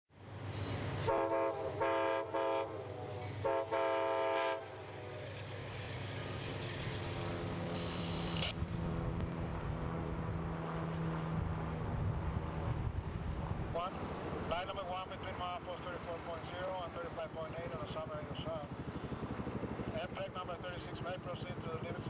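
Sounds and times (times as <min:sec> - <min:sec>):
train rumbling: 0:00.2 - 0:17.3
train horn blasts: 0:01.0 - 0:05.4
low engine hum: 0:05.2 - 0:17.2.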